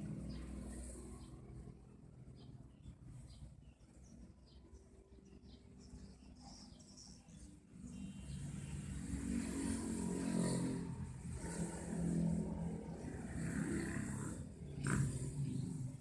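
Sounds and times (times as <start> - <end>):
vehicle engine passing: 0.0 - 2.4, 7.8 - 16.0.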